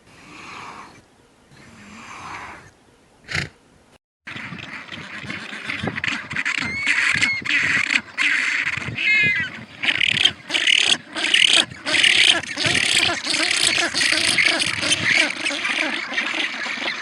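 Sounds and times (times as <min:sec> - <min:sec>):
animal cries: 0:04.8 - 0:17.0.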